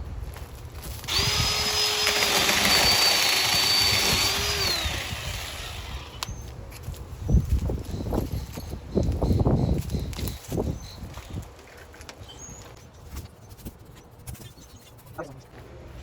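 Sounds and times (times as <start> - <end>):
electric chainsaw cutting stick: 1.1 - 6.3.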